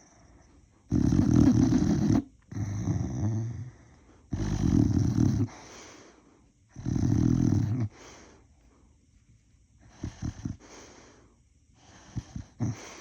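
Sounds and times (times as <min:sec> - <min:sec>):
dog breathing: 0:00.0 - 0:08.8, 0:09.8 - 0:13.0
dog snoring: 0:00.9 - 0:05.9, 0:06.7 - 0:08.3, 0:09.8 - 0:11.2, 0:11.8 - 0:13.0.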